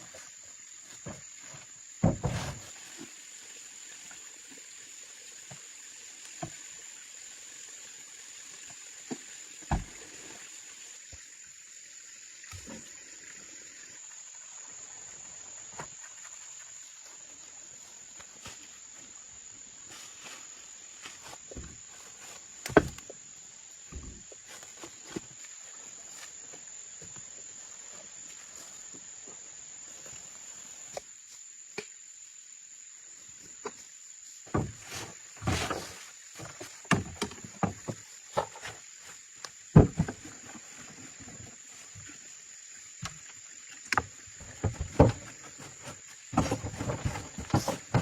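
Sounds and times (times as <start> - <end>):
sharp knocks and thuds: 1.0 - 2.7, 9.1 - 10.0, 22.6 - 23.1, 23.9 - 24.2, 34.5 - 38.8, 39.7 - 40.4, 43.9 - 48.0.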